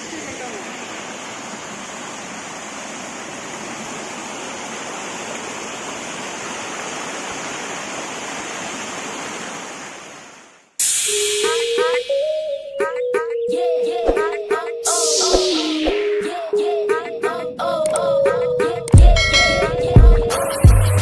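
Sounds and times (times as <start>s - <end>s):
waterfall rushing: 0.0s - 12.4s
music with steady tune: 10.8s - 21.0s.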